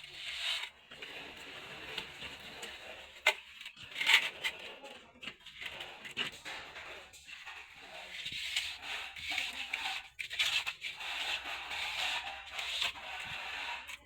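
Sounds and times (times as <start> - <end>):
hand tools scraping on hard surface: 0.0 - 14.0.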